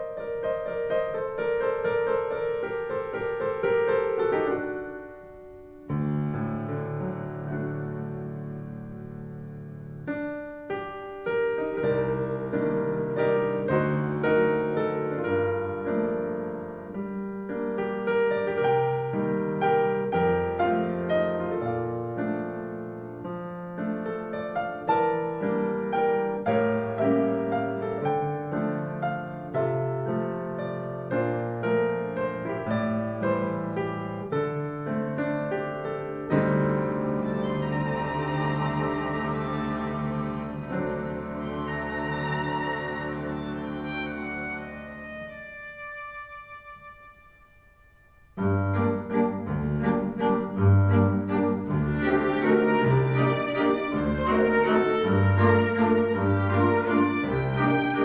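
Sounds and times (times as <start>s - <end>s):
piano music through loudspeakers: 0.0s - 58.0s
bowed strings: 36.4s - 58.0s.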